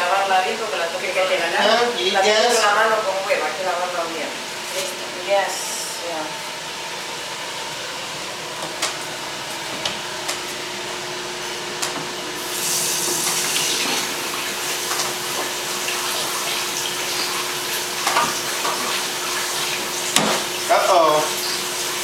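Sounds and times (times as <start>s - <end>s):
tap running into a sink: 12.8s - 20.6s.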